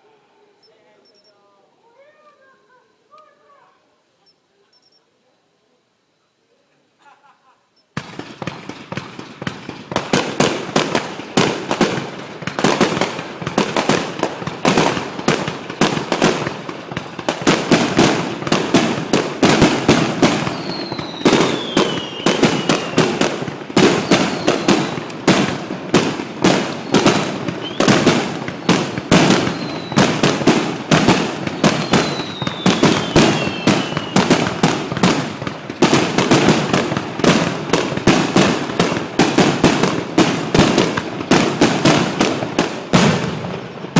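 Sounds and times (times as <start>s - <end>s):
firework shell bursts and crackling: 7.9s - 43.9s
falling whistling firework: 17.5s - 25.6s, 26.5s - 38.5s.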